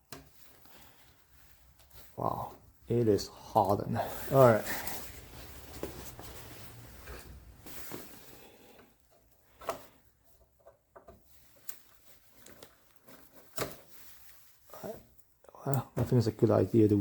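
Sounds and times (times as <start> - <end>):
faint rubbing: 0.8 - 8.4.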